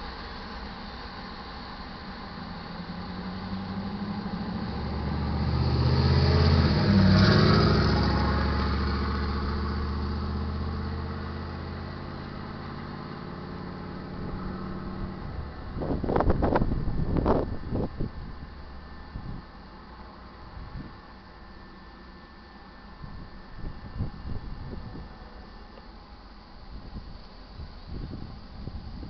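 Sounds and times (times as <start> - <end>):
train running noise: 0.0 - 5.2
diesel locomotive engine passing: 0.0 - 29.0.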